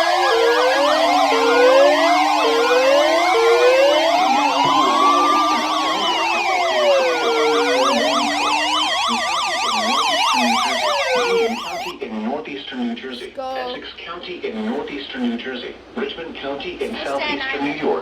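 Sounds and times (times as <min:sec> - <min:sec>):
siren slow wail: 0:00.0 - 0:12.0
siren yelping warbles: 0:00.0 - 0:12.0
steady low siren tone: 0:00.0 - 0:12.0.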